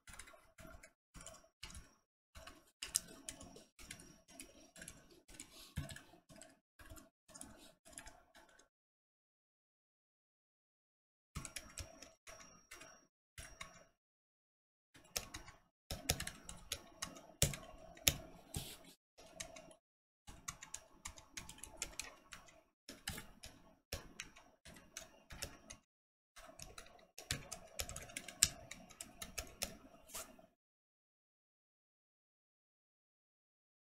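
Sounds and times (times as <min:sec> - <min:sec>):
typing on mechanical keyboard: 0:00.1 - 0:08.6, 0:15.1 - 0:18.3, 0:19.2 - 0:25.8, 0:26.4 - 0:30.0.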